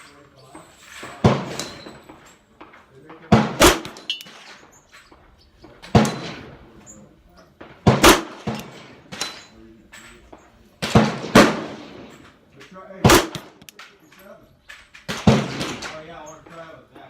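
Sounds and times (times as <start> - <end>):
gunshots echoing: 1.0 - 2.2, 3.1 - 4.7, 5.6 - 6.8, 7.6 - 9.6, 10.2 - 12.4, 13.0 - 13.9, 15.0 - 16.2.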